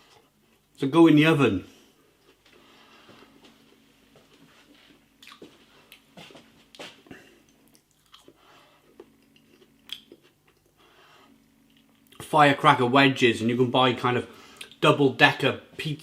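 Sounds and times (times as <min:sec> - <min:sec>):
faint low hum: 0:00.0 - 0:16.0
person quietly chewing: 0:05.1 - 0:12.2.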